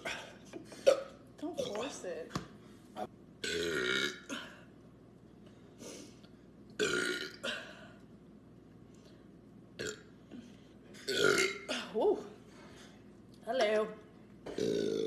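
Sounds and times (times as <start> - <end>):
people burping: 3.4 - 4.7, 6.8 - 7.8, 9.8 - 10.0, 11.0 - 12.0, 14.5 - 15.0.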